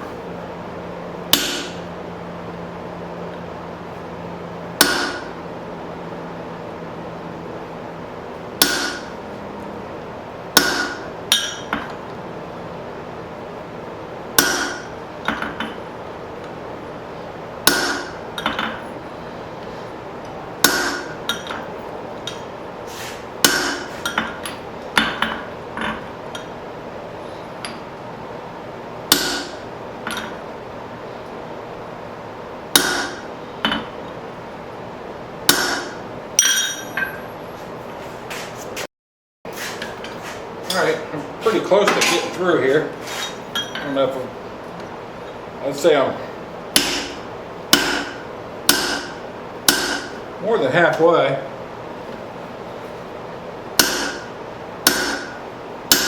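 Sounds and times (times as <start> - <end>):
hammer blows on anvil: 1.3 - 1.9, 4.8 - 5.4, 8.6 - 9.2, 10.6 - 11.9, 14.4 - 15.7, 17.6 - 18.8, 20.6 - 21.7, 23.4 - 24.4, 29.1 - 30.4, 32.7 - 33.9, 35.5 - 37.3, 46.8 - 50.2, 53.8 - 56.0.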